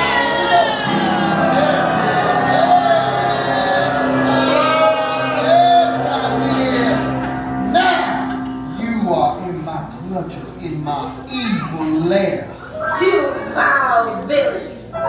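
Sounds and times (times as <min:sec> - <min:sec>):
voices singing: 0:00.0 - 0:08.9
instrumental accompaniment: 0:00.0 - 0:09.6.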